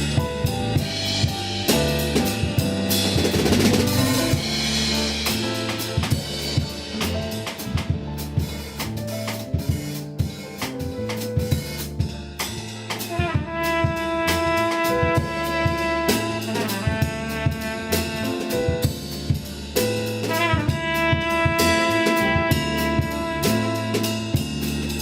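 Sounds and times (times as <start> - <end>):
drum kit beat: 0.0 - 25.0
low bass line: 0.0 - 25.0
long held brass notes: 4.2 - 7.4, 13.1 - 18.8, 20.3 - 24.8.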